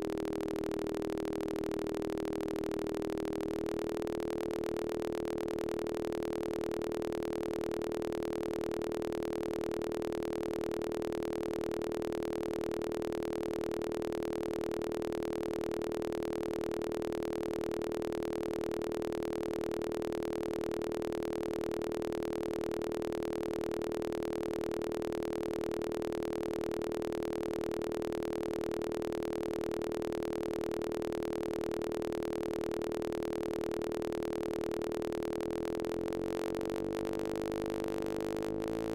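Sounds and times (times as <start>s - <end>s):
steady synthesized test tone: 34.6s - 38.9s.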